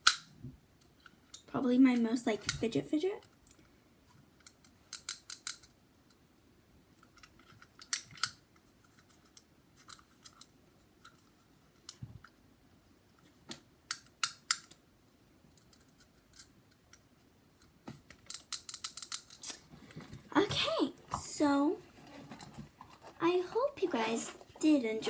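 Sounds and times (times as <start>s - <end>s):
fidget toy plastic clicks: 4.5s - 5.8s, 18.1s - 19.6s.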